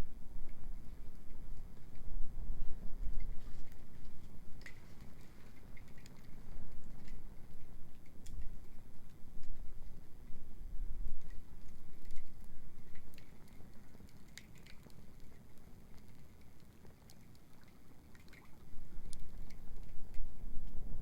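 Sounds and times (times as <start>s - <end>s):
bonfire crackling with pops: 12.9s - 19.3s.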